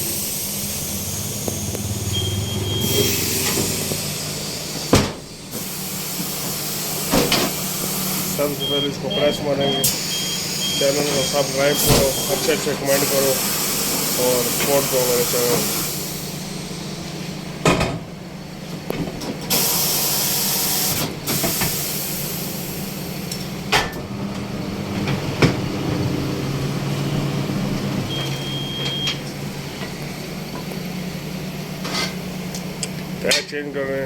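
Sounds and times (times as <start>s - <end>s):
steady low hum: 0.0s - 5.5s
compressed air hiss: 0.0s - 8.6s, 9.8s - 16.6s, 19.5s - 23.1s.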